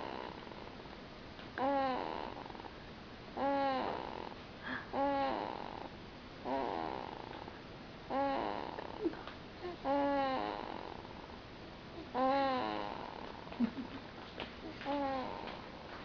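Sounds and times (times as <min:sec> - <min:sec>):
baby snoring: 0:00.0 - 0:00.7, 0:01.6 - 0:02.7, 0:03.4 - 0:07.4, 0:08.1 - 0:09.2, 0:09.8 - 0:11.2, 0:12.0 - 0:13.4, 0:14.9 - 0:15.9.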